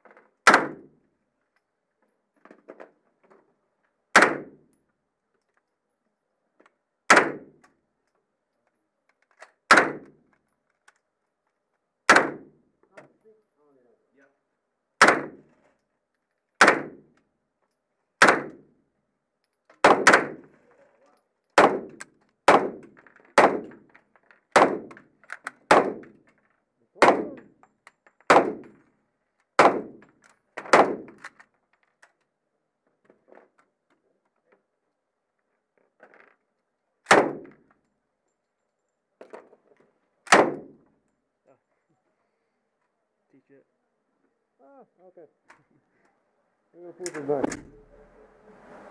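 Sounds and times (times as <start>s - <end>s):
gunshots with echo: 15.0s - 15.4s, 16.6s - 17.0s, 19.8s - 20.4s, 21.6s - 22.8s, 24.6s - 25.0s, 27.0s - 27.5s, 28.3s - 28.8s, 29.6s - 30.0s.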